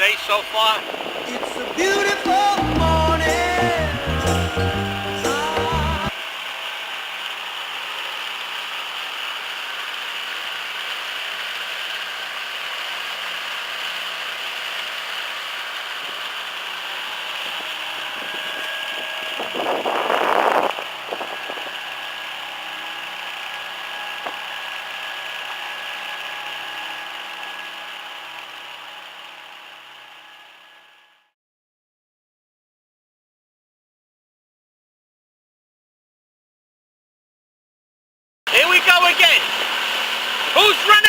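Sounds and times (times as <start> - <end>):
motor boat engine running: 0.1 - 6.2, 10.7 - 30.7.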